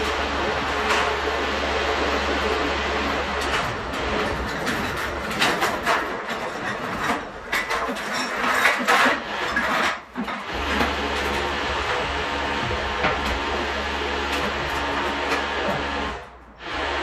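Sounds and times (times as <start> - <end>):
steady low hum: 0.0 - 8.5, 9.2 - 17.0
knocks and clatter of hand work: 3.3 - 16.4.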